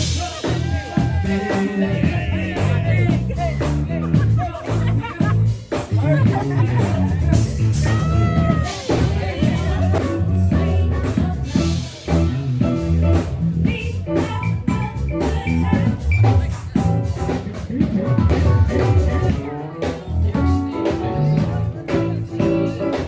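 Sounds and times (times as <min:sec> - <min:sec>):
music with drums and guitar: 0:00.0 - 0:23.0.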